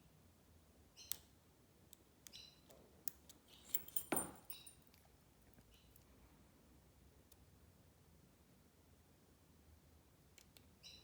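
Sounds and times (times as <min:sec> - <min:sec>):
short metallic ring: 0:03.7 - 0:04.8.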